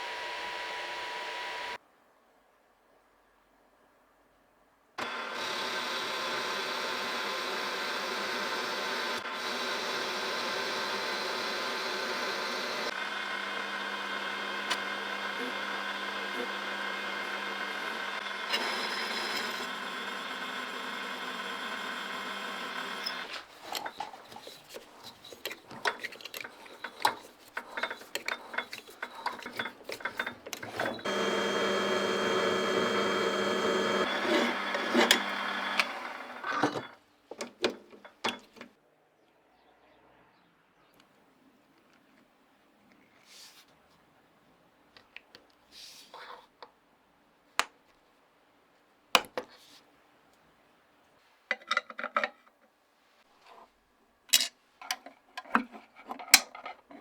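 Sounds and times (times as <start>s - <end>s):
power tool motor running: 0.0s - 1.8s, 5.0s - 23.3s, 28.5s - 36.9s
clicks and knocks of parts: 23.1s - 31.0s, 51.5s - 52.5s, 54.3s - 57.0s.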